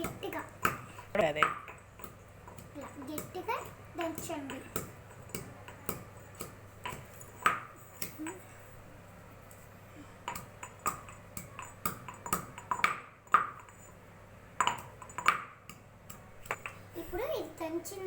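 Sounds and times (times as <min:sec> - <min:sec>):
pestle pounding in a mortar: 0:00.0 - 0:08.3, 0:10.3 - 0:13.8, 0:14.6 - 0:16.7.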